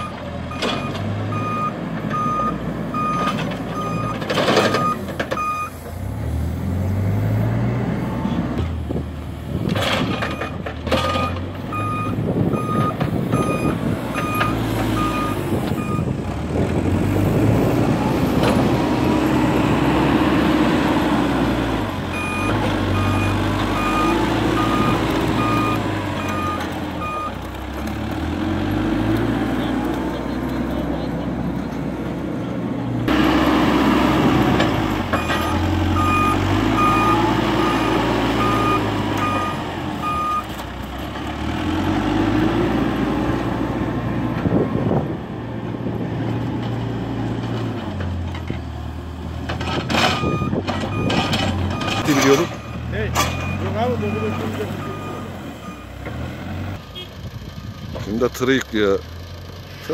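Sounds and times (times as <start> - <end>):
reversing alarm beeping: 0.0 - 5.8, 11.1 - 16.1, 22.1 - 27.4, 35.2 - 40.5, 50.2 - 56.0
diesel engine running and revving: 0.0 - 59.9.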